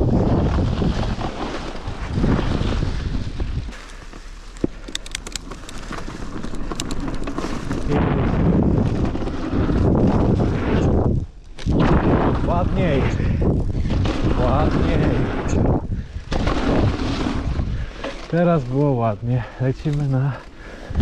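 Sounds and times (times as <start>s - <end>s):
wind buffeting microphone: 0.0s - 3.8s, 4.9s - 21.0s
bike tyre rumble on dirt: 0.0s - 21.0s
sharp clicks: 4.5s - 7.3s.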